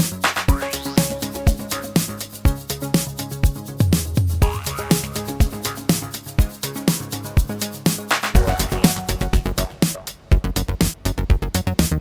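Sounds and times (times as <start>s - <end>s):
kick drum beat: 0.0s - 12.0s
upbeat electronic music: 0.0s - 12.0s.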